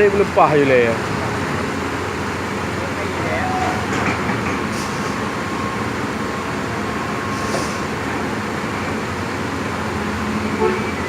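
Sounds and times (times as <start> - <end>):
heavy diesel machinery running: 0.0 - 11.0.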